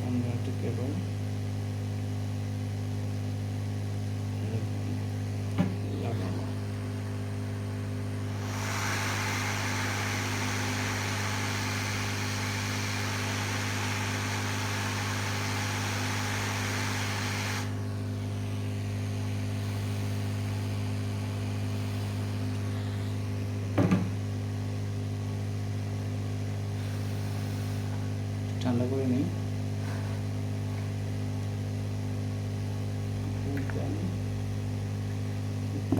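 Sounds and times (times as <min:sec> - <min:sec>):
electrical hum: 0:00.0 - 0:35.9
hot air blower rushing: 0:05.5 - 0:30.6
short knock: 0:23.8 - 0:24.2.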